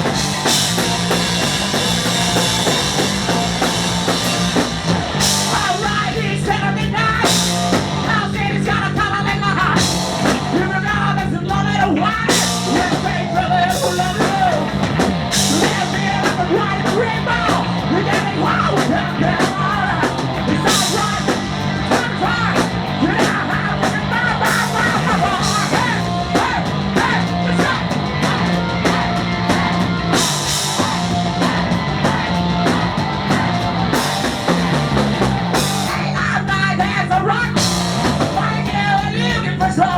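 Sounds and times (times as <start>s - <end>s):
distorted guitar: 0.0s - 39.9s
driving rock drums: 0.0s - 39.9s
pulsing bass line: 0.0s - 39.9s
person singing: 5.5s - 14.8s, 15.4s - 28.5s.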